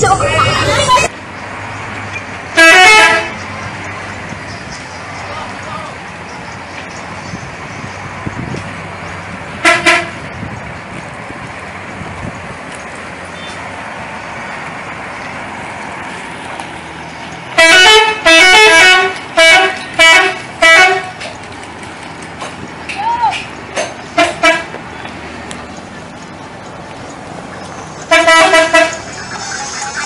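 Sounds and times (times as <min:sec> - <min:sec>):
steady background rumble: 0:00.0 - 0:01.1
multi-tone bus air horn: 0:02.6 - 0:03.4, 0:09.6 - 0:10.2, 0:17.6 - 0:21.2, 0:24.2 - 0:24.7, 0:28.1 - 0:30.0.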